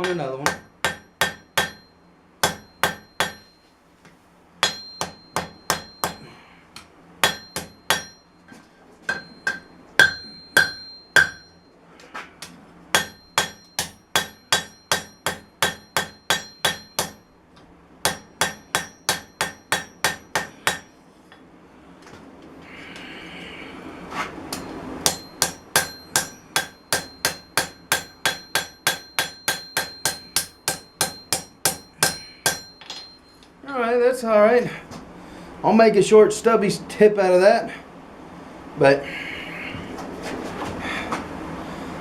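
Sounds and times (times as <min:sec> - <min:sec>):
hammer striking steel on anvil: 0:00.0 - 0:03.6, 0:04.6 - 0:06.3, 0:07.2 - 0:08.3, 0:09.0 - 0:11.6, 0:12.9 - 0:17.3, 0:18.0 - 0:21.0, 0:24.5 - 0:33.3.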